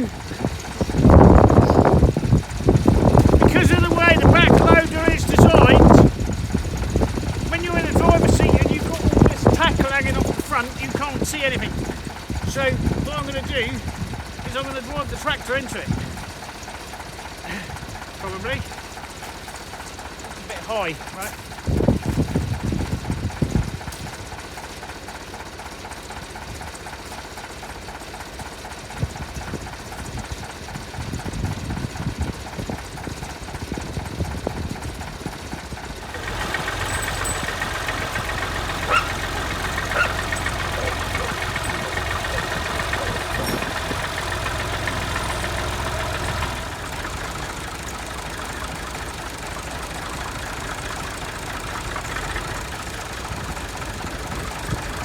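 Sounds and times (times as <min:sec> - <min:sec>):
tractor engine running: 0:00.0 - 0:55.0.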